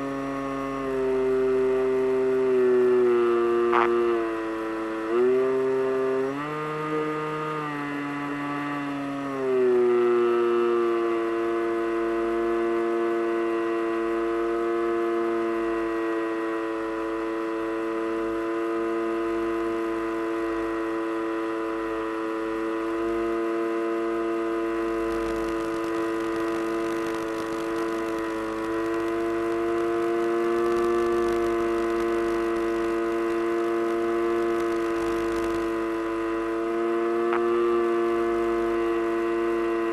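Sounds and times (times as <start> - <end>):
model aircraft motor and propeller: 21.6 - 39.9.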